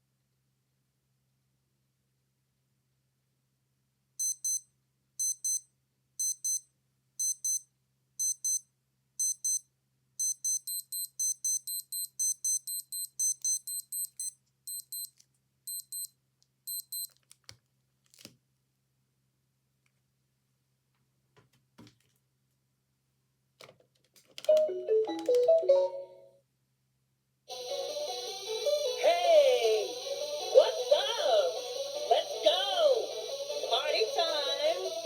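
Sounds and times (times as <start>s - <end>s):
wristwatch alarm beeping: 4.2s - 4.6s, 5.2s - 5.6s, 6.2s - 6.6s, 7.2s - 8.6s, 9.2s - 9.6s, 10.2s - 15.1s, 15.7s - 16.1s, 16.7s - 17.1s.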